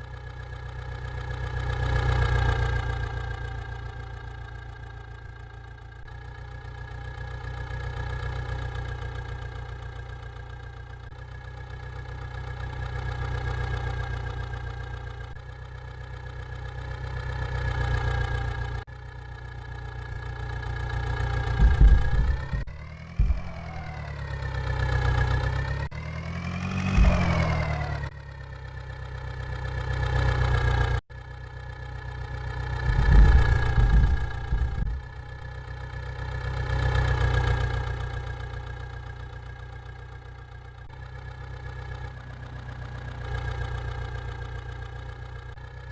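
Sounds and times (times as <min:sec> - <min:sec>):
engine idling and revving: 0:00.0 - 0:45.9
heavy low thuds: 0:21.4 - 0:24.0, 0:27.0 - 0:27.8, 0:32.9 - 0:35.4.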